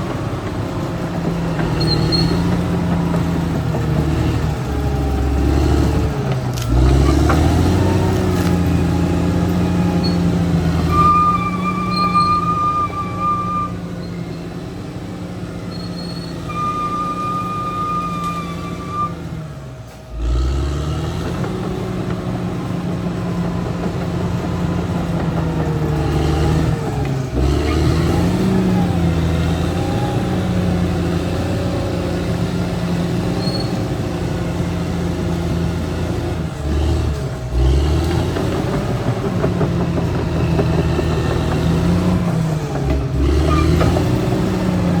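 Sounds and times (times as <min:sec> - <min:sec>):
bulldozer diesel engine drone: 0:00.0 - 0:45.0
thin squeal: 0:01.8 - 0:02.6, 0:09.9 - 0:14.5, 0:15.7 - 0:19.3.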